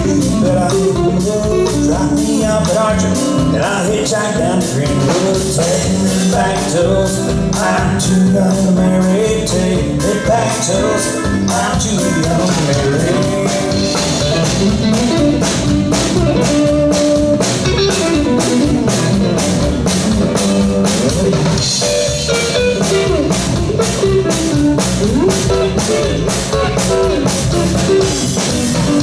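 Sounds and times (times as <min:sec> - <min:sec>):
drum kit beat: 0:00.0 - 0:29.0
guitar lead with bending notes: 0:00.0 - 0:29.0.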